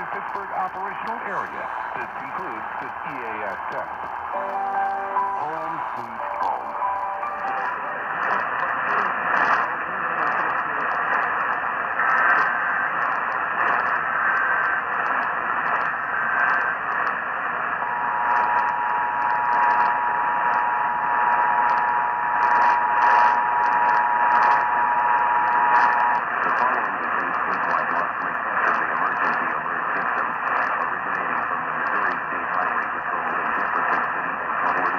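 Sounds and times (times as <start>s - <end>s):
faint data bursts: 0.0s - 34.9s
radio static and crackle: 0.0s - 34.9s
two-tone attention signal: 4.3s - 8.5s.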